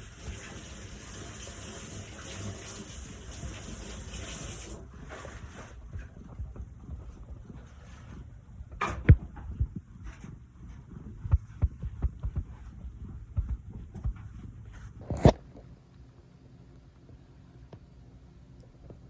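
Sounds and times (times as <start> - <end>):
soft low thumps of kitchen work: 5.7 - 17.9.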